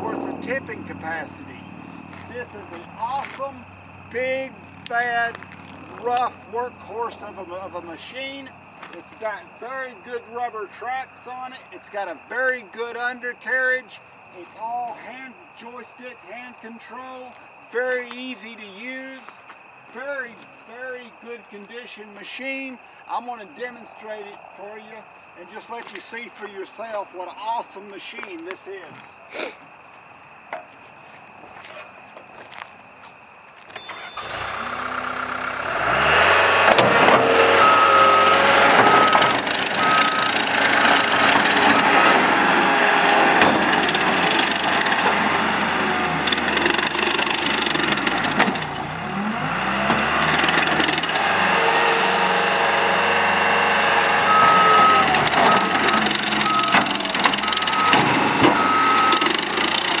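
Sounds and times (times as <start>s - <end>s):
diesel engine revving: 0.0s - 8.6s, 34.0s - 60.0s
backup alarm beeping: 33.8s - 34.3s, 37.2s - 42.2s, 54.1s - 59.9s.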